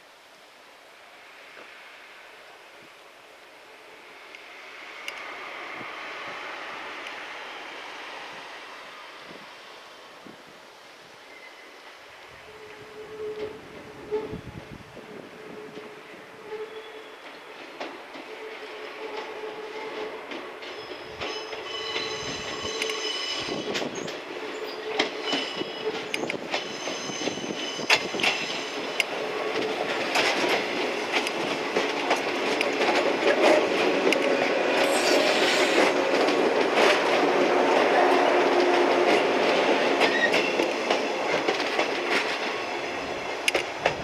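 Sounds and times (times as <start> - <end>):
electric train approaching: 1.0 - 10.6, 11.3 - 44.0
train wheels squealing: 11.3 - 14.6, 15.4 - 29.7, 34.7 - 37.1, 39.4 - 41.4.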